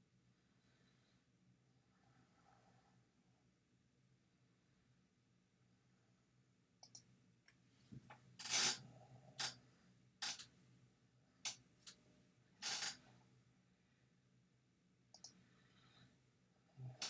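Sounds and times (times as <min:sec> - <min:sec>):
computer mouse clicking: 0:06.8 - 0:07.1, 0:15.1 - 0:15.4.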